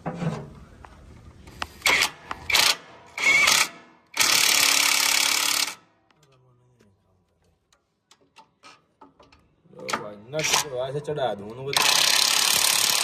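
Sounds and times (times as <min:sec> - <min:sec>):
power tool running nuts: 0:01.8 - 0:05.8, 0:11.7 - 0:13.0.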